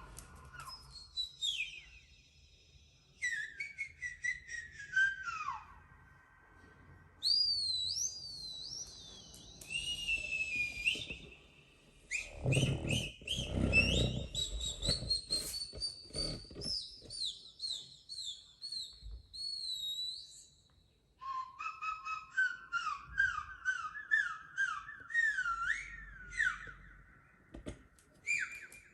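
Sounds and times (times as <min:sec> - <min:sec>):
high wavering whistling: 0:07.2 - 0:18.3, 0:21.2 - 0:27.0.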